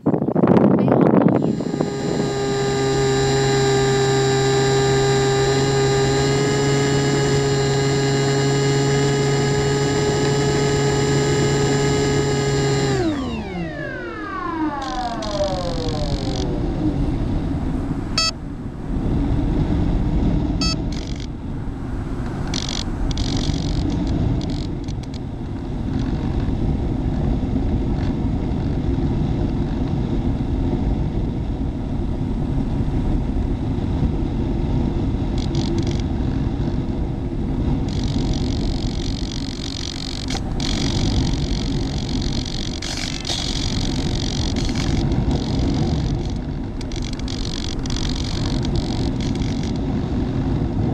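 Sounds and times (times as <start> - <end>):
wind buffeting microphone: 0.0 - 50.9
electric motor and propeller whine: 0.6 - 50.9.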